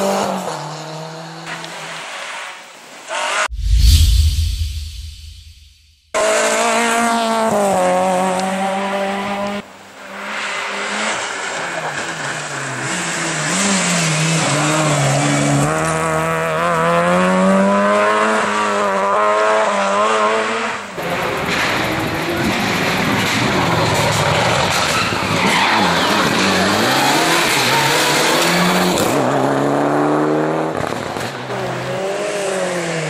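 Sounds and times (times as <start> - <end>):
rally car engines running hard: 10.2 - 33.0.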